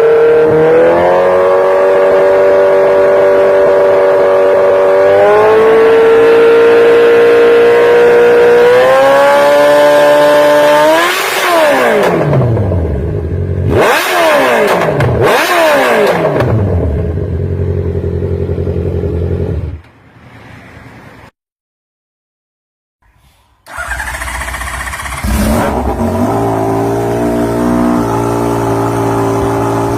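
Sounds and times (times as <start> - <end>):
engine revving and idling: 0.0 - 19.8, 23.7 - 29.9.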